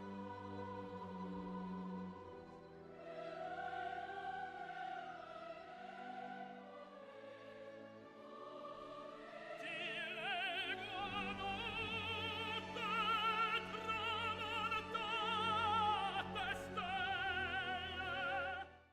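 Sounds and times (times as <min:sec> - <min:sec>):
orchestra playing: 0:05.6 - 0:18.8
opera singer with vibrato: 0:08.8 - 0:18.7.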